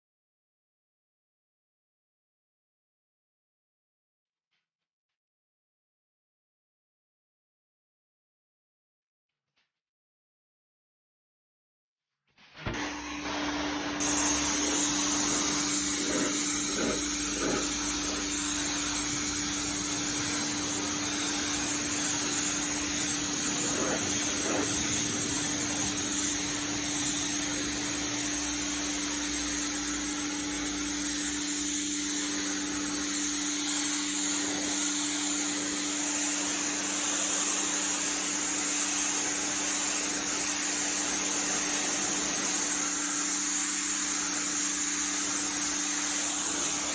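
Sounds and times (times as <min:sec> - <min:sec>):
high-pressure water spray hiss: 0:12.7 - 0:46.9
pressure washer motor hum: 0:12.7 - 0:46.9.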